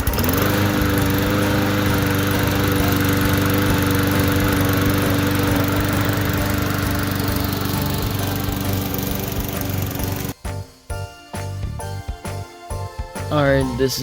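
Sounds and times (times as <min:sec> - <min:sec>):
lawn mower engine running: 0:00.0 - 0:10.4.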